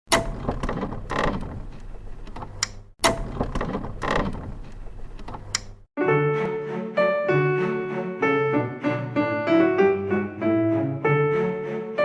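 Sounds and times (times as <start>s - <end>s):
mechanical clunks and clicks: 0.1s - 5.9s
piano music: 6.0s - 12.0s.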